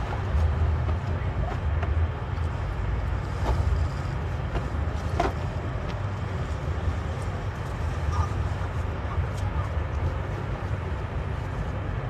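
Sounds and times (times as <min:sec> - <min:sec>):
vehicle engine rumbling: 0:00.0 - 0:12.0.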